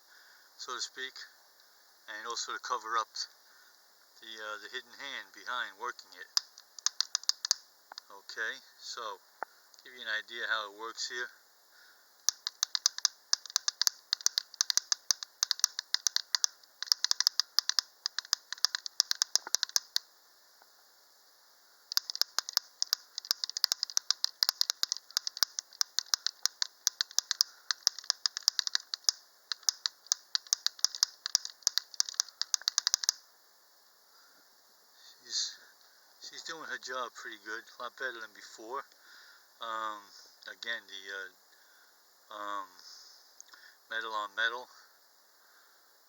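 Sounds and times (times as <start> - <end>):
metal beak tapping on metal: 6.4 - 8.0, 12.3 - 20.0, 21.9 - 33.2.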